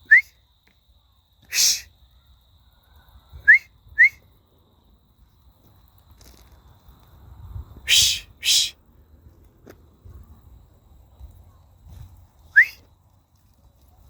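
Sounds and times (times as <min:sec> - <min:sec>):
rising whistled chirps: 0:00.0 - 0:00.4, 0:01.5 - 0:01.9, 0:03.4 - 0:04.2, 0:07.9 - 0:08.8, 0:12.5 - 0:12.9
breathy hiss-like burst: 0:01.5 - 0:01.9.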